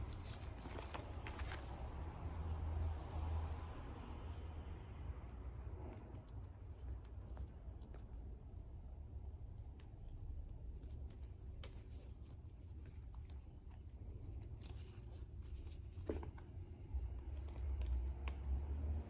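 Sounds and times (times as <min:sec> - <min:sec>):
paper and plastic rustling: 0:00.0 - 0:03.2, 0:10.7 - 0:16.5
low steady hum: 0:00.0 - 0:19.0.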